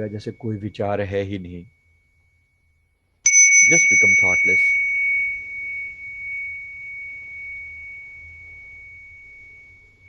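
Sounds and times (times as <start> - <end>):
meditation bell ringing: 0.0 - 10.0.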